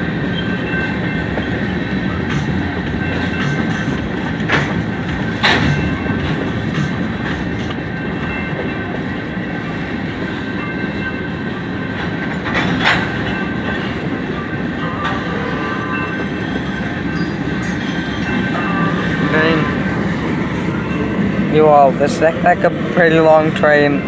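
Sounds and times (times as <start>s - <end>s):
train wheels rumbling on rails: 0.0s - 24.0s
sharp clank: 3.3s - 7.5s
thin steady squeal: 14.4s - 19.8s.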